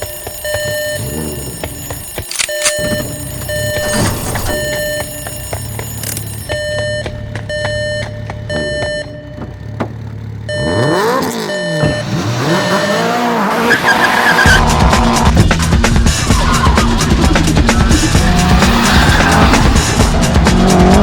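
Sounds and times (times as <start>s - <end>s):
electronic beep: 0.0s - 9.4s, 10.5s - 14.6s
car tyres squealing: 10.5s - 15.3s, 15.9s - 21.0s.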